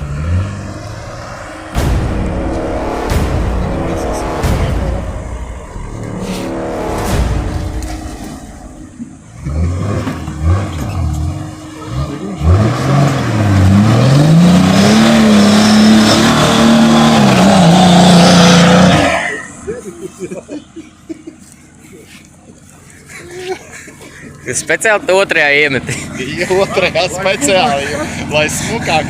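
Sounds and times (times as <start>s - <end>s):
engine revving: 0.0s - 19.6s.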